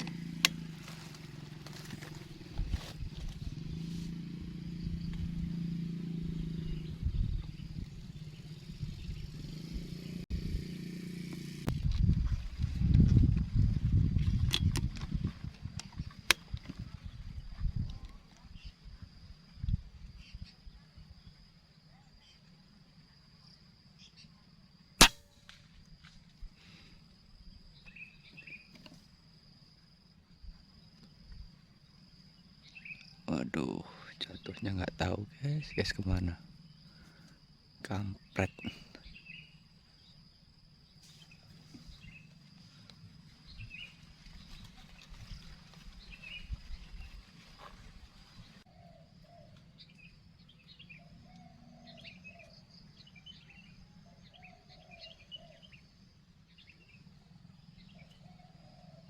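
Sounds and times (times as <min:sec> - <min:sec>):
distant small motor hum: 0:00.0 - 0:11.9
low wind rumble: 0:00.0 - 0:21.4, 0:41.4 - 0:48.7
insects chirping: 0:00.0 - 0:59.0
gusty wind buffeting microphone: 0:06.2 - 0:10.7, 0:11.7 - 0:20.2
sharp click: 0:14.4 - 0:15.0, 0:25.0 - 0:25.6
air rifle shot: 0:25.0 - 0:25.6.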